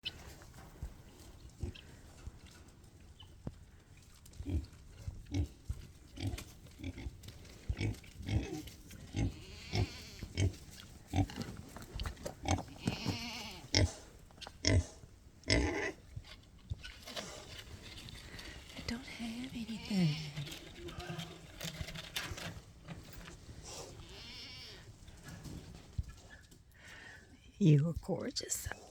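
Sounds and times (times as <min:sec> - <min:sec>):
pig snorting: 0:04.4 - 0:13.1, 0:13.7 - 0:16.0
pig grunting: 0:12.4 - 0:16.0.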